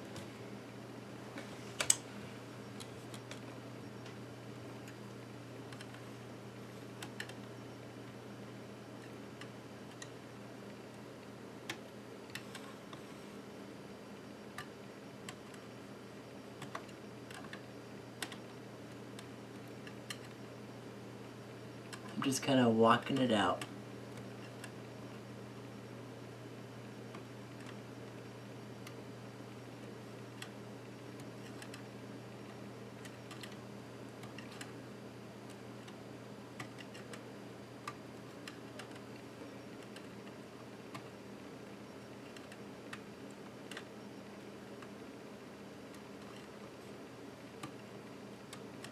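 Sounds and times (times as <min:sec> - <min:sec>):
steady low hum: 0:00.0 - 0:48.9
laptop parts clicking: 0:05.7 - 0:06.0, 0:07.0 - 0:07.5, 0:11.7 - 0:12.7, 0:16.6 - 0:17.6, 0:18.2 - 0:18.5, 0:19.2 - 0:20.4, 0:31.2 - 0:31.9, 0:33.0 - 0:33.6, 0:34.2 - 0:34.8, 0:36.6 - 0:41.2, 0:42.1 - 0:43.9, 0:48.5 - 0:48.9.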